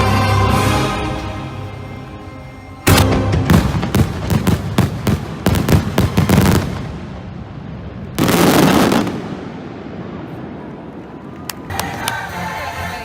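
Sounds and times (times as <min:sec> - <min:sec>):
fireworks crackles: 0:00.0 - 0:12.7
fireworks bangs: 0:02.8 - 0:12.2.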